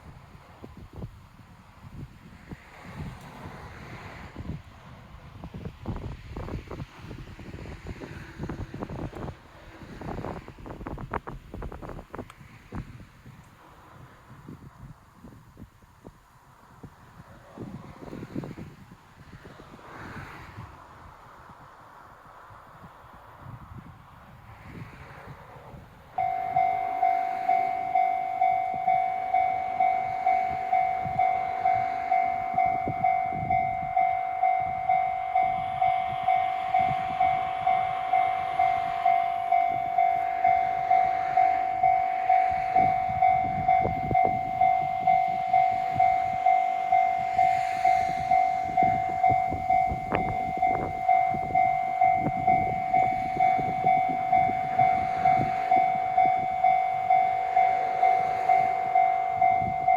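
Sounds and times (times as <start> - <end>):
level crossing warning bell: 26.1 - 59.9.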